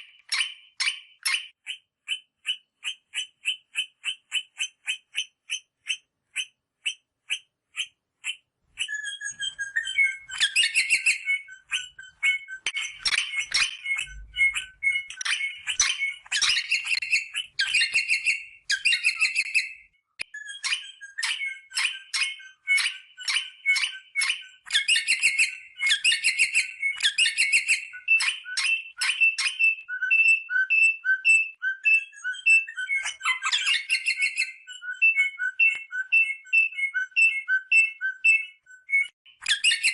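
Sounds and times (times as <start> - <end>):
parrots chattering and piping whistles: 0.0 - 39.9
parrots calling: 2.1 - 19.8, 32.2 - 35.5.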